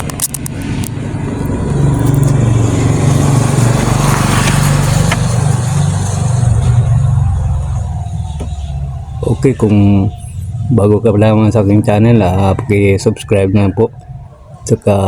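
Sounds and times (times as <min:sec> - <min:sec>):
motor engine running: 0:00.0 - 0:12.8.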